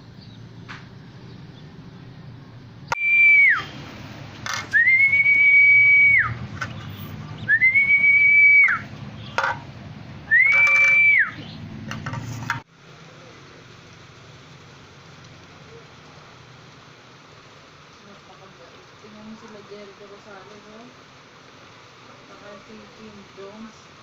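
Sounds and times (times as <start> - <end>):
long high whistles: 2.9 - 3.8, 4.7 - 6.4, 7.4 - 8.9, 10.3 - 11.5.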